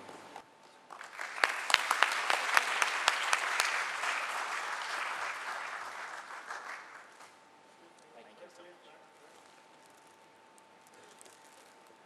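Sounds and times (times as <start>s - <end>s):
audience applauding: 0.9s - 7.4s
sharp close claps: 0.9s - 7.4s.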